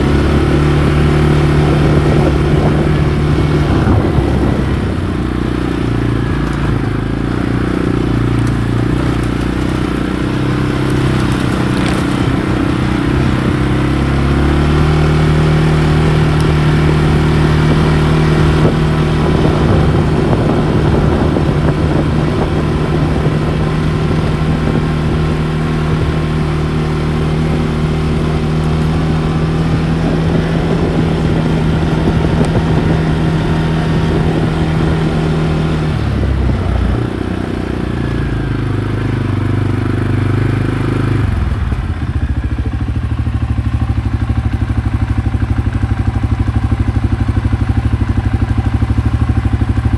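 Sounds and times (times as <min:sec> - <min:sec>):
atv engine running: 0:00.0 - 0:49.9.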